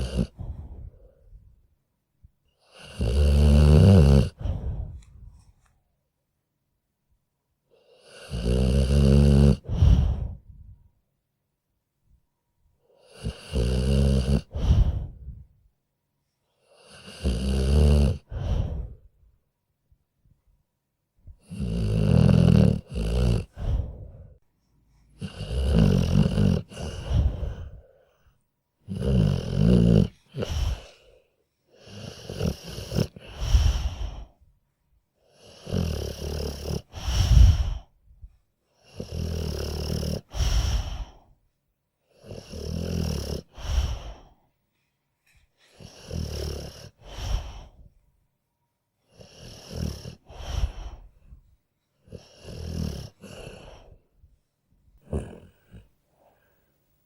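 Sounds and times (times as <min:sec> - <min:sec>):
dog snoring: 0:00.0 - 0:01.2, 0:02.6 - 0:05.3, 0:07.7 - 0:10.4, 0:13.0 - 0:15.5, 0:16.6 - 0:19.1, 0:21.3 - 0:24.3, 0:25.0 - 0:28.1, 0:28.8 - 0:34.4, 0:35.3 - 0:37.9, 0:38.8 - 0:41.3, 0:42.1 - 0:44.4, 0:45.6 - 0:47.9, 0:49.1 - 0:51.4, 0:52.0 - 0:54.1, 0:55.0 - 0:56.5.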